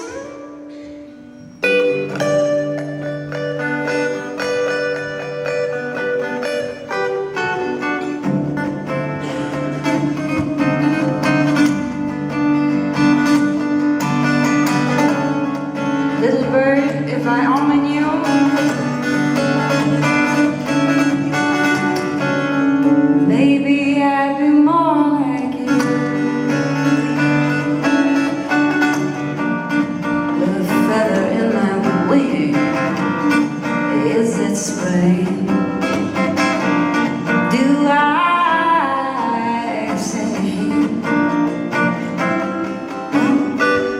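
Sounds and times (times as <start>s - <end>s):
acoustic folk band playing: 0.0s - 43.9s.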